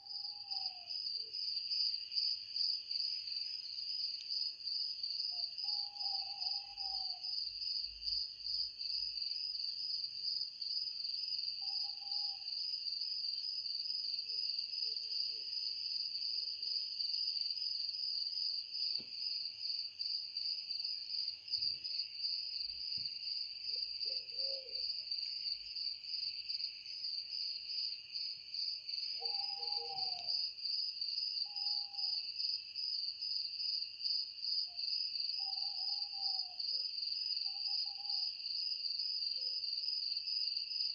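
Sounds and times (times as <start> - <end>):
crickets trilling: 21.9 - 32.5, 34.5 - 39.0
bird call: 29.2 - 30.4.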